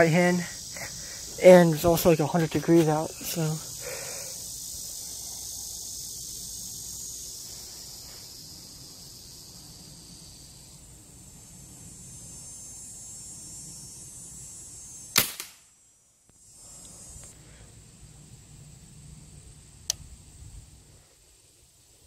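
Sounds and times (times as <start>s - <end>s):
high insect hiss: 0.0s - 22.0s
air rifle shot: 15.2s - 15.6s.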